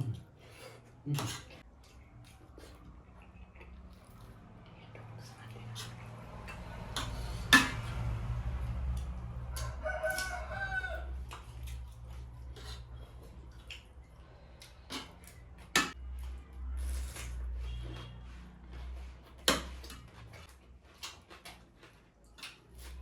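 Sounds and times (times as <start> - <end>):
rooster crowing: 9.4 - 11.2.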